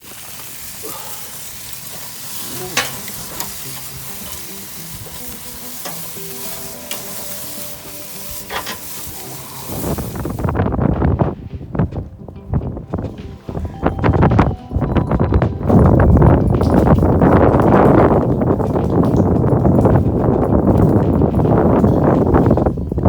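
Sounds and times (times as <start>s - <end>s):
meat sizzling on a grill: 0.0s - 10.6s
faint music with held notes: 0.2s - 23.0s
fat popping: 0.7s - 22.6s.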